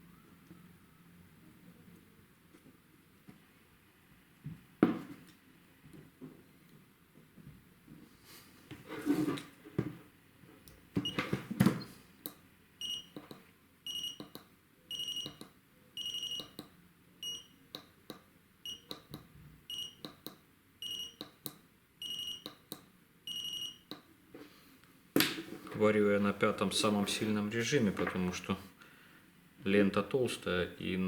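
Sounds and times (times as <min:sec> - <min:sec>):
short beeps: 0:12.8 - 0:13.2, 0:13.9 - 0:14.3, 0:14.9 - 0:15.4, 0:16.0 - 0:16.6, 0:17.2 - 0:17.6, 0:19.7 - 0:20.0, 0:20.8 - 0:21.2, 0:22.0 - 0:22.6, 0:23.3 - 0:23.9.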